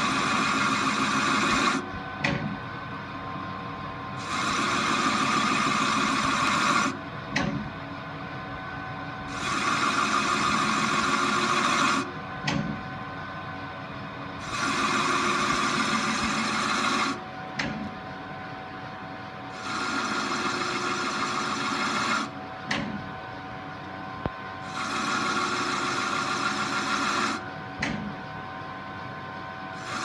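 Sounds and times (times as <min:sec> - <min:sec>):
machine tool cutting metal: 0:00.0 - 0:01.8, 0:04.2 - 0:07.0, 0:09.3 - 0:12.1, 0:14.4 - 0:17.2, 0:19.5 - 0:22.3, 0:24.6 - 0:27.5, 0:29.8 - 0:30.0
machine humming: 0:00.0 - 0:01.9, 0:04.2 - 0:07.6, 0:08.4 - 0:12.7, 0:13.8 - 0:17.8, 0:19.4 - 0:22.6, 0:24.1 - 0:27.6, 0:29.8 - 0:30.0.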